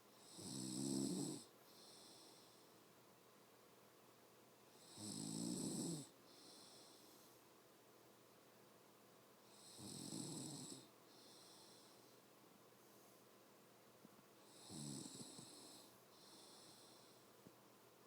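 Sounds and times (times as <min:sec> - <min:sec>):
woman snoring: 0:00.2 - 0:02.2, 0:04.8 - 0:06.6, 0:09.6 - 0:10.9, 0:14.5 - 0:17.0
soft hissy breath: 0:01.4 - 0:03.0, 0:06.1 - 0:07.7, 0:10.8 - 0:17.7.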